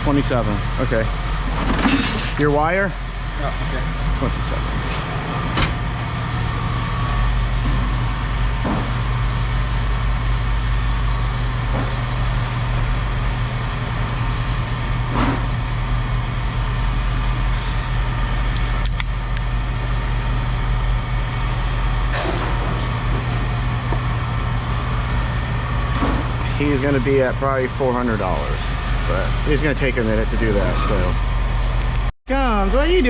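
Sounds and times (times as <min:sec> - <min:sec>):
vehicle engine idling: 0:00.0 - 0:32.1.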